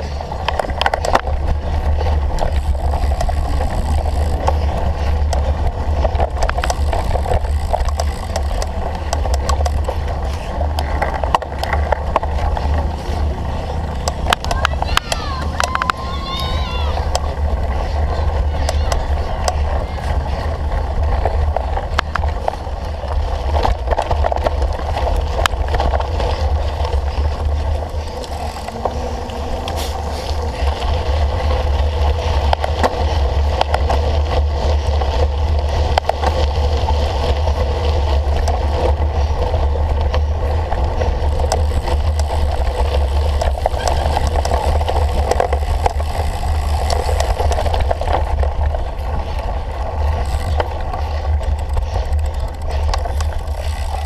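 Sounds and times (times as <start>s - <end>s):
bike rattle and tyre noise: 0.0s - 54.0s
wind buffeting microphone: 0.0s - 54.0s
sharp clicks and knocks: 2.2s - 13.0s, 14.0s - 16.0s.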